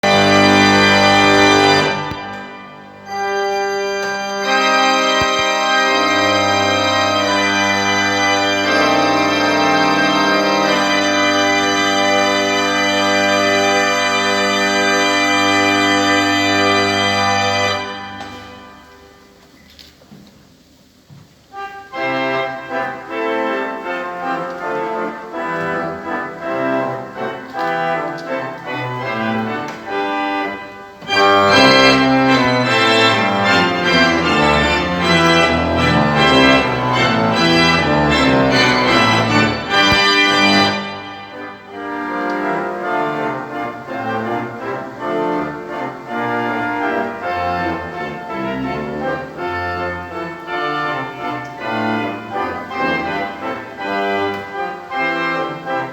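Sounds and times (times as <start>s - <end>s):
pipe organ chords: 0.0s - 19.4s, 21.5s - 55.9s.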